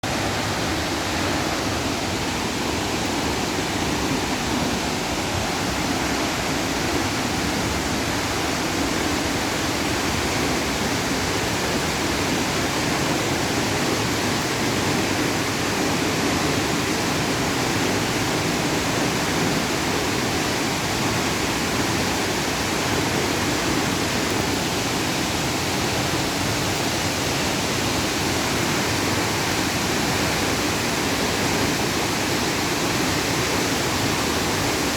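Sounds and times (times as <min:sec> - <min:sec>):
waterfall rushing: 0:00.0 - 0:34.9.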